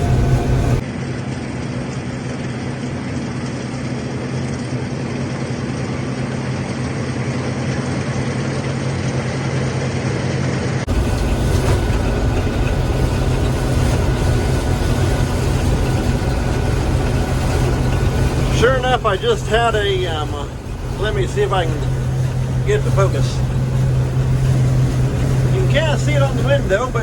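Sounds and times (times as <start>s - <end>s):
combine harvester machinery drone: 0.0s - 27.0s.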